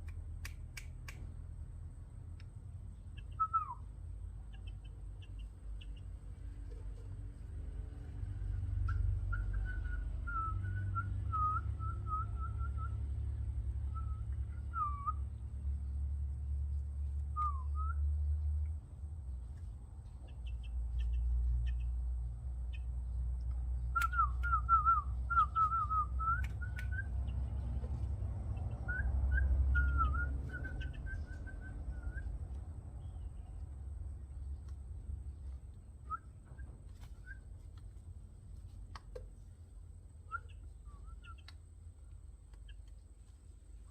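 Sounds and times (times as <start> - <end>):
sharp clicks: 0.0 - 1.4, 26.3 - 27.0, 41.3 - 43.1
steady low rumble: 0.0 - 43.9.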